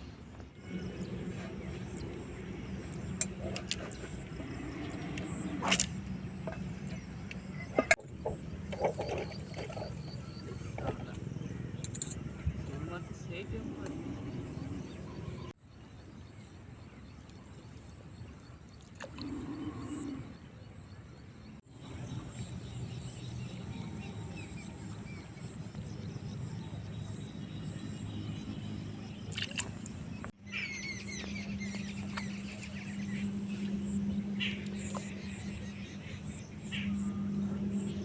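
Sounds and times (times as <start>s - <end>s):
birds chirping: 0.0s - 38.0s
low rumbling haze: 0.6s - 15.6s.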